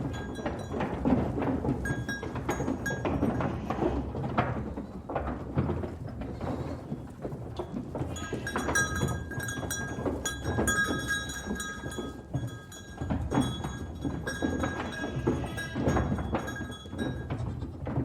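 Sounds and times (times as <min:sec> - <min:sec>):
goat bells ringing: 0:00.0 - 0:03.8, 0:07.6 - 0:18.0
hooves pattering: 0:00.0 - 0:18.0.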